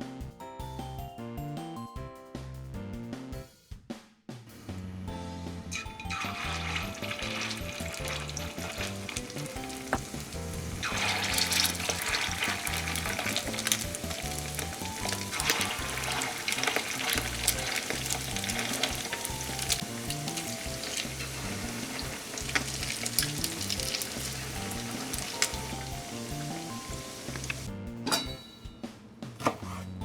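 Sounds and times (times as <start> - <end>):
soft background music: 0.0 - 3.5, 4.7 - 30.0
food sizzling in hot oil: 5.8 - 27.7.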